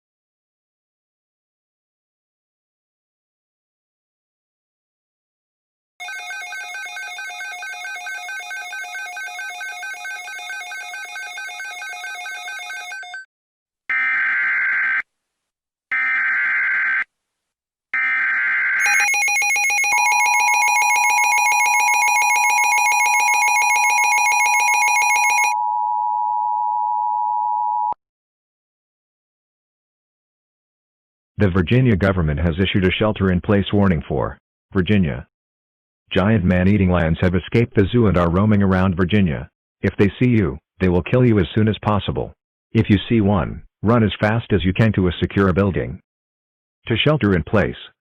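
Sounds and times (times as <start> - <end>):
harsh buzzing alarm tone: 18.0 - 25.6
fast-pulsing electronic ringing tone: 18.8 - 25.6.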